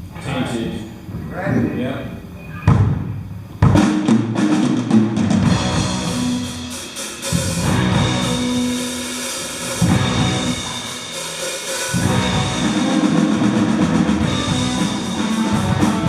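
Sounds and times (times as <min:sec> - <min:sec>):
bass drum and snare hits: 0:02.7 - 0:06.4, 0:09.6 - 0:11.0
live rock band playing: 0:03.6 - 0:16.0.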